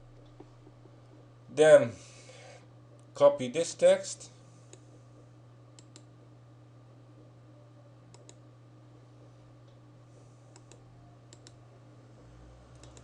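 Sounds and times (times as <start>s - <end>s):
low electrical hum: 0.0s - 13.0s
faint computer mouse clicks: 8.1s - 8.4s, 12.8s - 13.0s.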